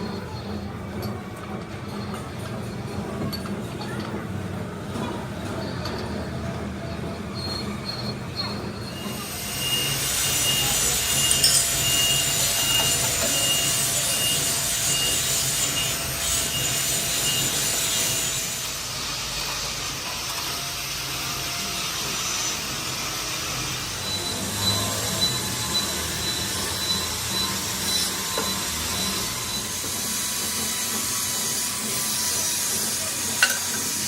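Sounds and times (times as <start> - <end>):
machine tool cutting metal: 6.9 - 34.0.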